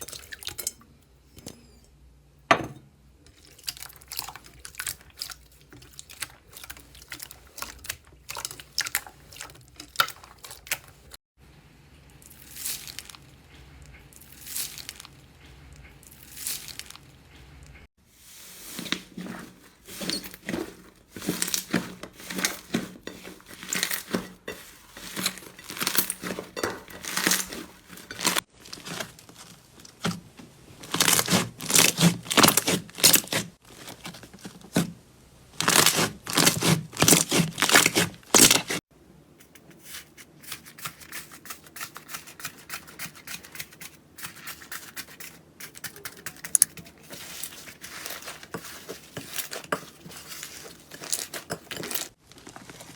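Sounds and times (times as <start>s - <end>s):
crunchy slime crackling: 24.9s - 34.9s, 35.5s - 38.8s, 50.2s - 52.9s.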